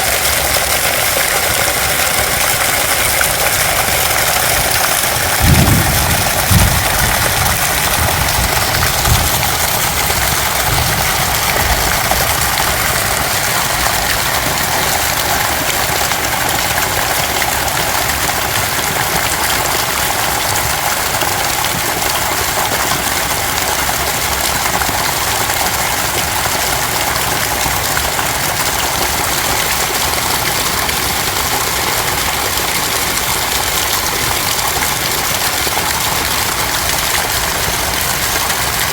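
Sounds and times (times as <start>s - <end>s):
heavy rain pouring: 0.0s - 38.9s
low thumps: 5.2s - 12.4s.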